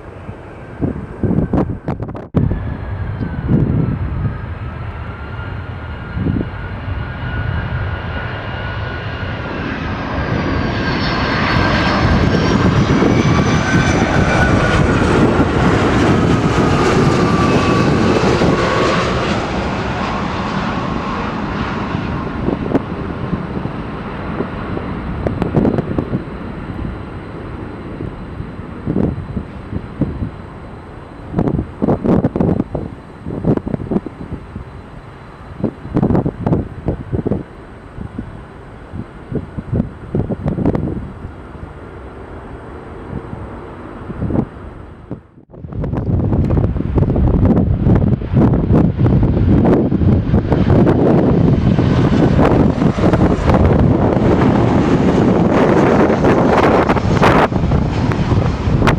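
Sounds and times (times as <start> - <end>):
jet engines passing close: 0.0 - 58.9
wind buffeting microphone: 0.0 - 58.9.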